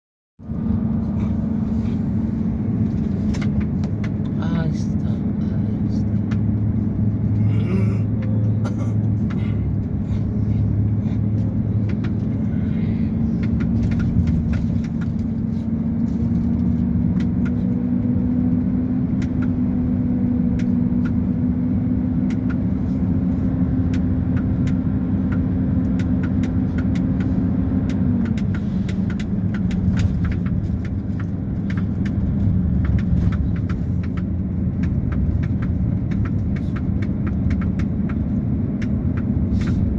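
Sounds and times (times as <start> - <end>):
heavy diesel engine running: 0.4 - 39.9.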